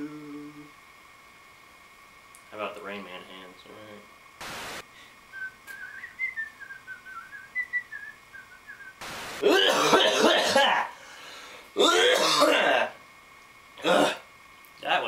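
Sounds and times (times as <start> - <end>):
man whistling a tune: 5.3 - 9.0
loud cough: 9.4 - 10.9, 11.8 - 12.9, 13.8 - 14.2.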